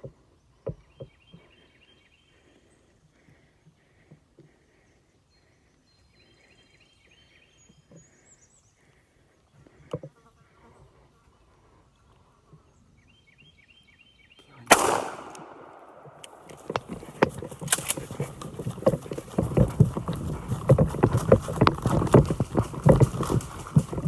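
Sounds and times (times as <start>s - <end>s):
shotgun shot: 14.7s - 16.5s.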